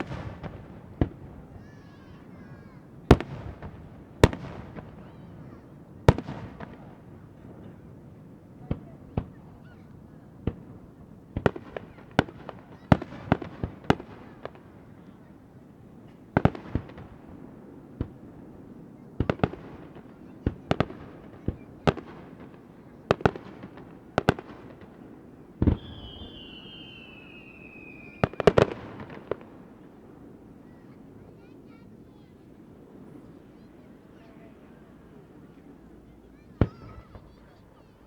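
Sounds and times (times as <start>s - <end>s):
falling firework whistle: 25.6s - 29.4s
firework shells bursting: 25.6s - 29.6s.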